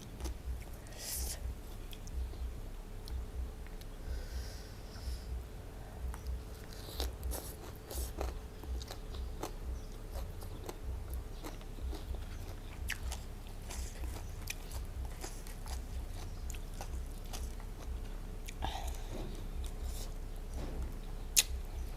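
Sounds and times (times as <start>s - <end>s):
person chewing crunchy food: 6.1s - 20.6s, 21.4s - 21.9s.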